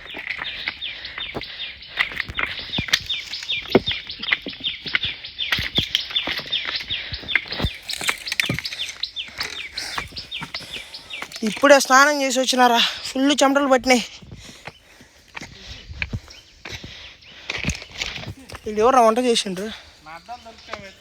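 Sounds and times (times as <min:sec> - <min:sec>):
birds chirping: 0:00.0 - 0:21.0.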